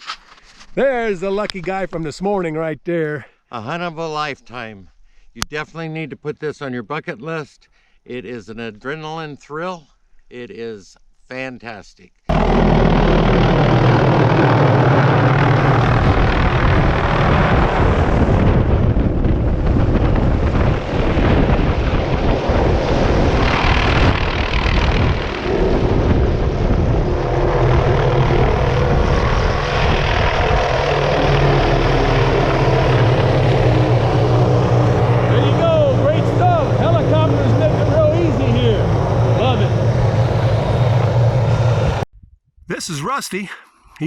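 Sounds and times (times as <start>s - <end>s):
helicopter turbine and rotor noise: 12.3s - 42.0s.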